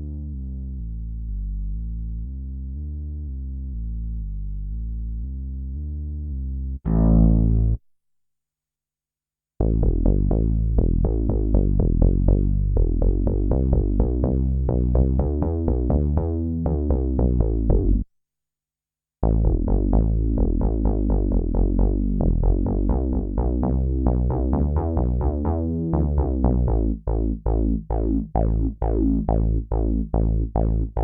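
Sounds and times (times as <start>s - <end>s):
synthesizer short pitched notes: 6.9s - 7.8s.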